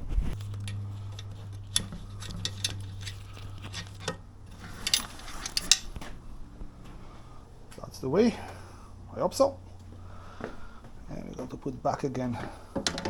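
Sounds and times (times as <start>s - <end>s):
low steady hum: 0.0s - 13.0s
hardware clicking and clinking: 0.4s - 6.2s, 12.8s - 13.0s.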